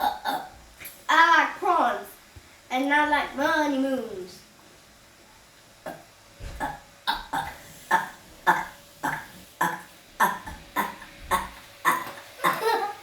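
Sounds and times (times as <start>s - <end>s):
person burping: 0.0s - 0.6s, 5.8s - 13.0s.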